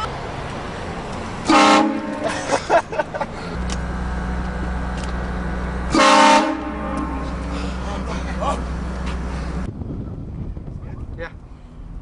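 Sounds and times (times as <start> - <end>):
vehicle engine humming: 0.0 - 12.0
train horn blasts: 1.4 - 2.3, 5.8 - 7.5.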